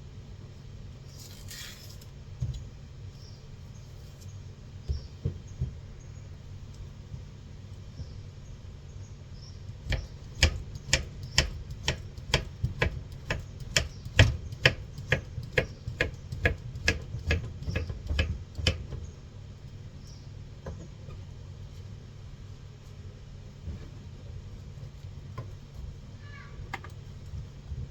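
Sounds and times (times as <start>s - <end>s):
knife chopping fruit on a board: 9.7s - 19.0s.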